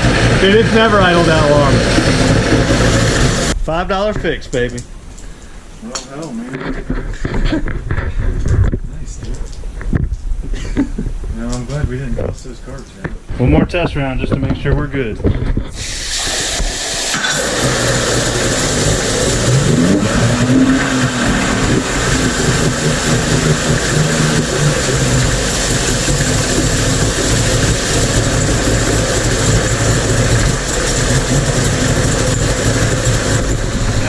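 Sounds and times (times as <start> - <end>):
outboard motor revving and idling: 0.0 - 3.6, 16.5 - 34.0.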